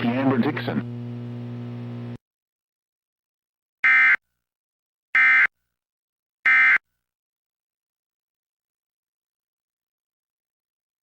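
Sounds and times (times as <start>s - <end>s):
low hum: 0.0s - 2.2s.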